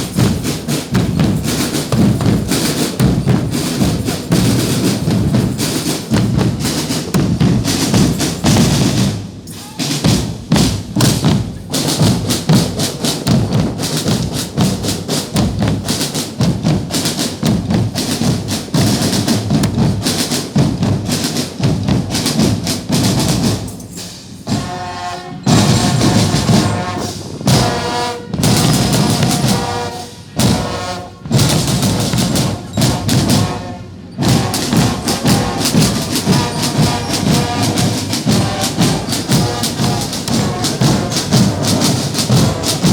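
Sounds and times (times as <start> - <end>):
bass drum: 0.0 - 9.2, 10.0 - 23.6, 34.3 - 42.9
drum band playing fast rhythm: 0.0 - 42.9.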